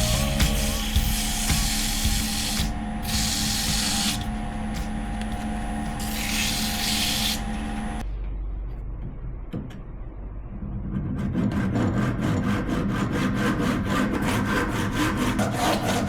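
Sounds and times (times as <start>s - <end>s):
spraying hiss: 0.0s - 4.2s
rhythmic wood rubbing strokes: 0.0s - 8.0s, 11.3s - 16.0s
steady machine hum: 0.0s - 12.0s.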